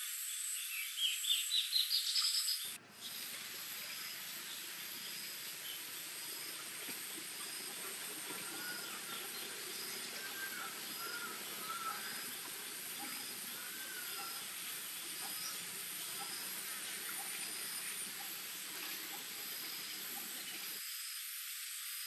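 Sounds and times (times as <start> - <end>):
high insect drone: 3.0 - 22.0
warbling bird call: 7.4 - 18.5.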